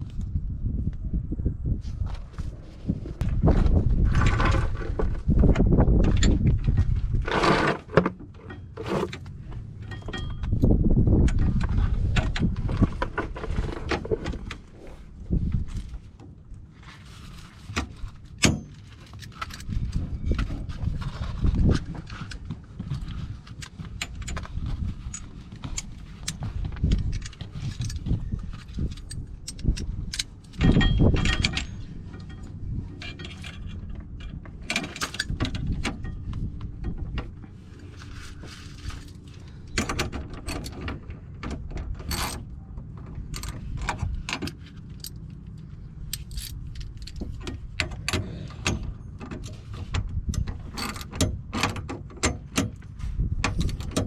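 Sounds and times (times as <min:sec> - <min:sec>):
metal tools clinking and rattling: 0:08.4 - 0:14.1, 0:23.6 - 0:37.0, 0:41.8 - 0:42.5, 0:43.3 - 0:49.7, 0:50.3 - 0:52.8.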